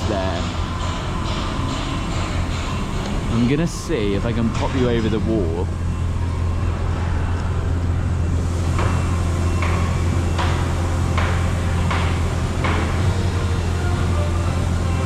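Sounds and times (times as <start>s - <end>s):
hammer blows: 0.0s - 5.7s, 8.4s - 15.0s
steady low hum: 0.0s - 15.0s.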